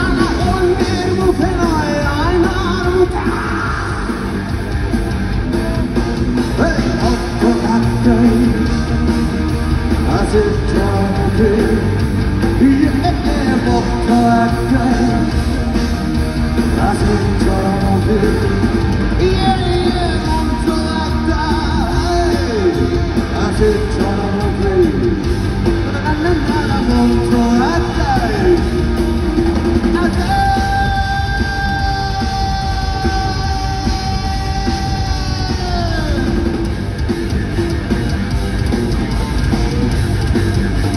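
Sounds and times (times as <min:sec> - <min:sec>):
bending guitar melody: 0:00.0 - 0:40.9
rock band playing live: 0:00.0 - 0:40.9
person singing: 0:06.5 - 0:08.7, 0:10.0 - 0:15.4, 0:16.7 - 0:25.2, 0:29.9 - 0:36.5.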